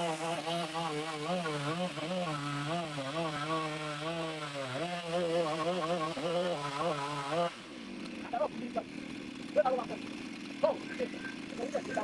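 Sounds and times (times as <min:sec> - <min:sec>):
chainsaw cutting wood: 0:00.0 - 0:12.0.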